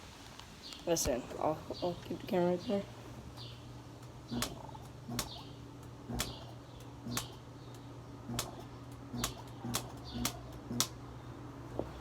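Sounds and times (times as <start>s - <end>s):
air conditioner compressor humming: 0.0s - 12.0s
sharp clicks: 3.4s - 11.0s.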